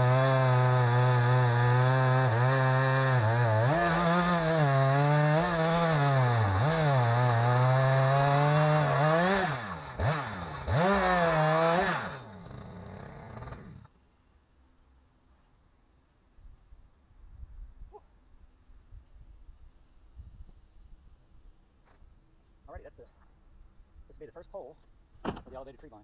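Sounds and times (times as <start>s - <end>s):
chainsaw cutting through log: 0.0s - 13.9s.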